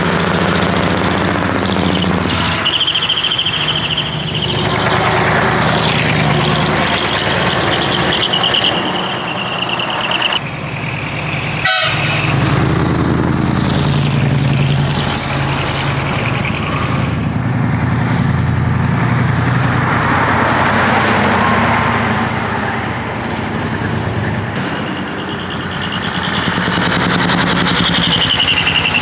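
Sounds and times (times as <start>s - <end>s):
diesel truck engines: 0.0s - 29.0s
truck horn toots: 0.6s - 14.6s, 24.6s - 29.0s.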